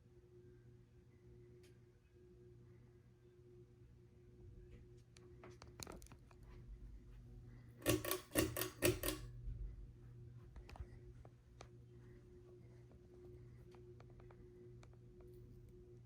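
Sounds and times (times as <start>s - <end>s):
ceiling fan humming: 0.0s - 16.0s
loud clicks and rattles: 7.8s - 9.2s.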